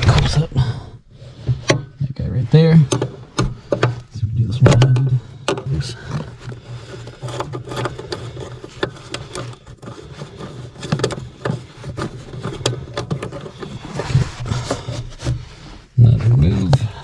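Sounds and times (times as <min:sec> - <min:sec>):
plastic clicks and knocks: 0:02.8 - 0:15.4.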